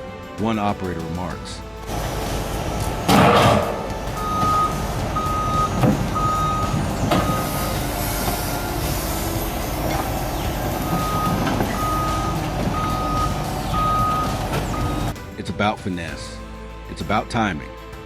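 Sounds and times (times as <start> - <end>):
diesel engine running: 1.8 - 15.2
truck reversing alarm beeping: 1.9 - 15.2
loud thump: 3.0 - 7.6.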